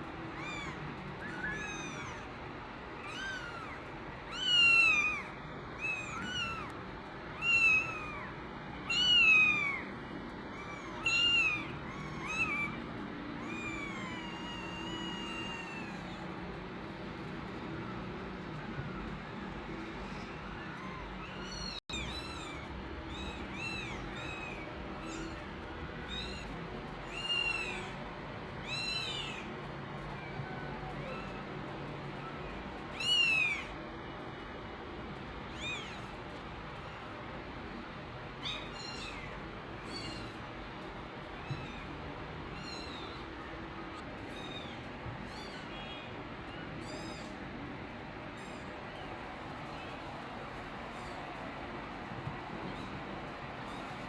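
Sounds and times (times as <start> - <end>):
kittens mewing: 0.3 - 2.4, 3.0 - 6.8, 7.4 - 8.3, 8.9 - 16.4, 19.7 - 25.4.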